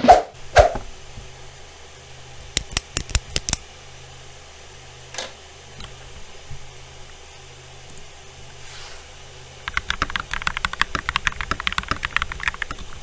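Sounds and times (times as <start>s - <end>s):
mechanical keyboard keystrokes: 9.7s - 13.0s.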